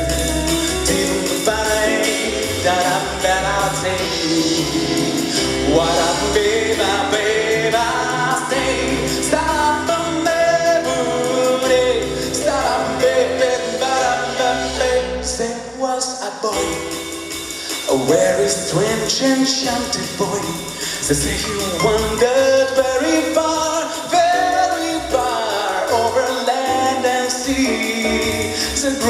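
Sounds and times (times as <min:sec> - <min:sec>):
low bass: 0:00.0 - 0:15.7, 0:16.6 - 0:29.0
live band music: 0:00.0 - 0:15.8, 0:16.4 - 0:29.0
person singing without words: 0:00.0 - 0:16.9, 0:17.6 - 0:29.0.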